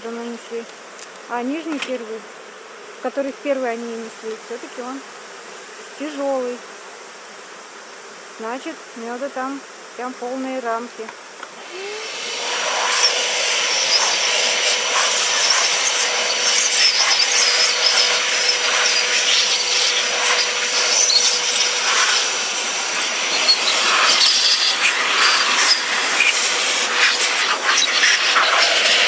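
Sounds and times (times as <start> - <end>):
vacuum blower whine and air rush: 11.4 - 29.0.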